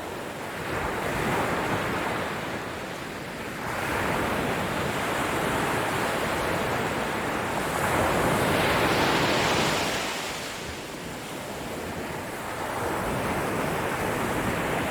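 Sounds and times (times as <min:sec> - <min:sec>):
waves washing on shore: 0:00.0 - 0:14.9.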